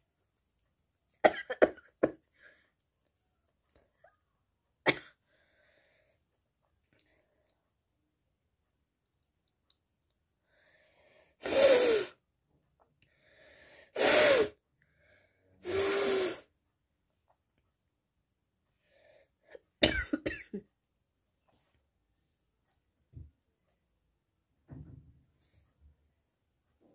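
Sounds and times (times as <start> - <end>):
person sneezing: 11.4 - 12.2, 14.0 - 14.6, 15.6 - 16.5
breath in: 13.1 - 16.5.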